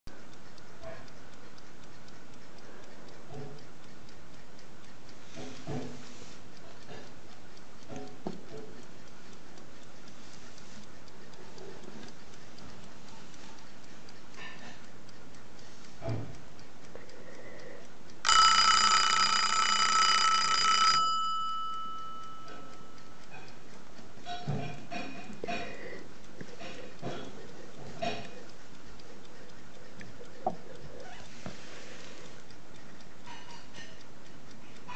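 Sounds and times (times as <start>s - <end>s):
clock ticking: 0.1s - 34.9s
alarm clock bell ringing: 18.2s - 23.2s.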